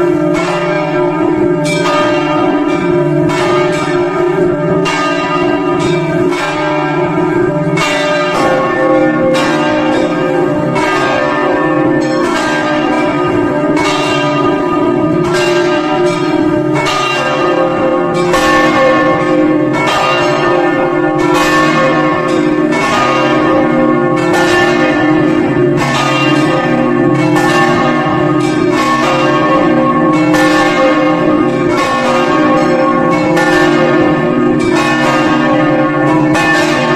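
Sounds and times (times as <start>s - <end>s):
church bells pealing: 0.0s - 36.9s.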